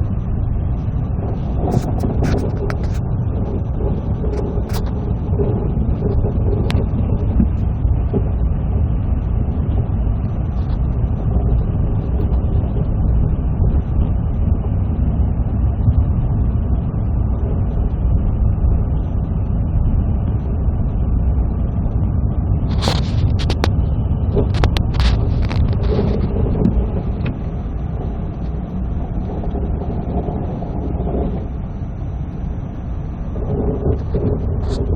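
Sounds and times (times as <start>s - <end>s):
sharp clicks and knocks: 22.7s - 27.4s.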